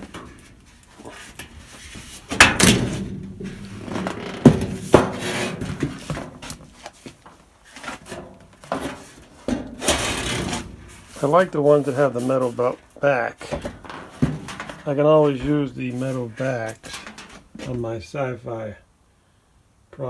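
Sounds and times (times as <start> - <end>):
metal panel scraping: 0.0 - 6.6, 8.0 - 12.7
metal panel knocking and clattering: 2.2 - 6.6, 8.1 - 11.0, 13.6 - 14.8.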